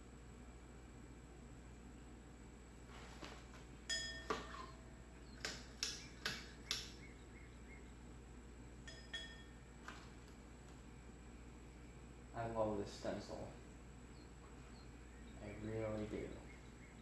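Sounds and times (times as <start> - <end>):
steady low hum: 0.0 - 17.0
sharp ringing clinks: 3.9 - 4.8, 8.8 - 9.6.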